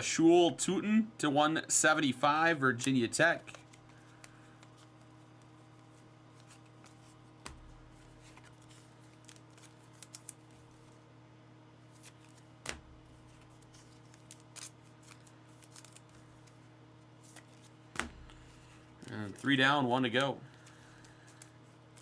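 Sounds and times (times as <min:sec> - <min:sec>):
faint electrical hum: 0:00.0 - 0:22.0
cards clicking and tapping on table: 0:07.4 - 0:08.5, 0:12.6 - 0:13.2, 0:18.0 - 0:18.7.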